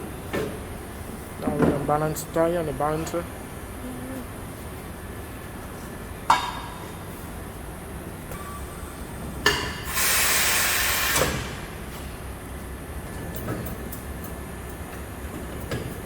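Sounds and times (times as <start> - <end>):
compressed air hissing: 8.3 - 12.1.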